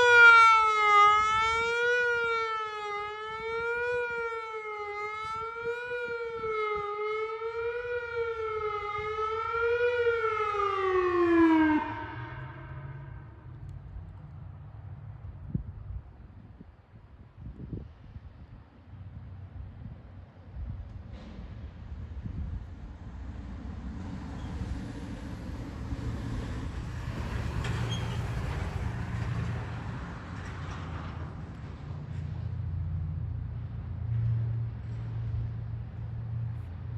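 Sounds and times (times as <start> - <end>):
wavering outdoor warning siren: 0.0 - 14.8, 23.6 - 36.9
road vehicle passing: 0.0 - 15.8, 21.1 - 36.9.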